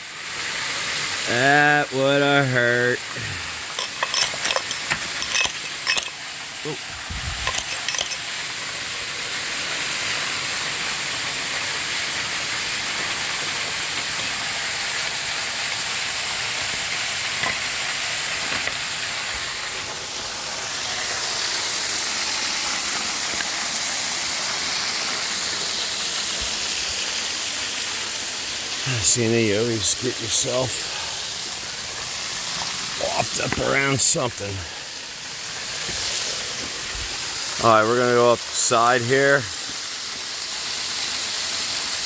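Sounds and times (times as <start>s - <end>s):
waterfall rushing: 0.0s - 42.0s.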